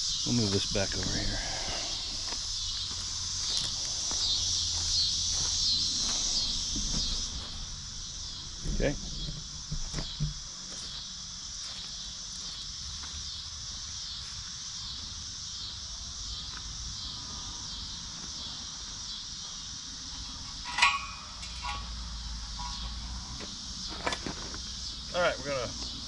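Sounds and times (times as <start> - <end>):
crickets chirping: 0.0 - 26.0
metallic clink: 20.5 - 22.9.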